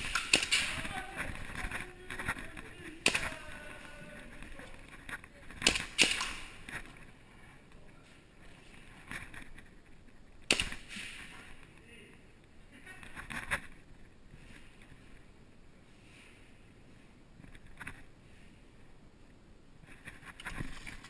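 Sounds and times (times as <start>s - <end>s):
airsoft guns firing: 0.0s - 2.2s, 3.0s - 4.0s, 5.6s - 6.7s, 10.5s - 11.4s.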